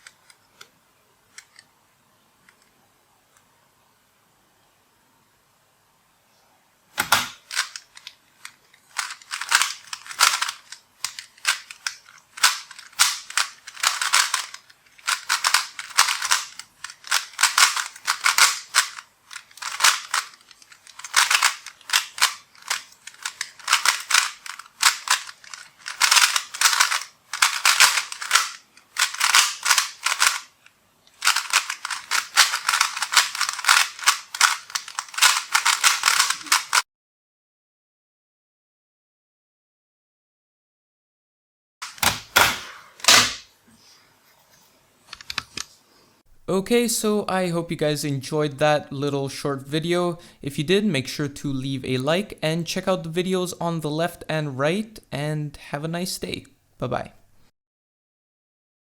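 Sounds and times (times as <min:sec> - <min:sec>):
speedcube plastic clicking: 0:07.0 - 0:36.8.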